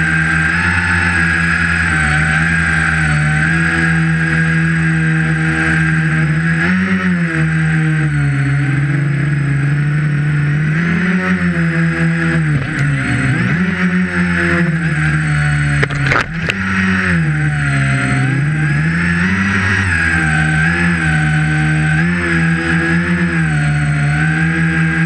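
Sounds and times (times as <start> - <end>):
drone motors whining: 0.0 - 25.0.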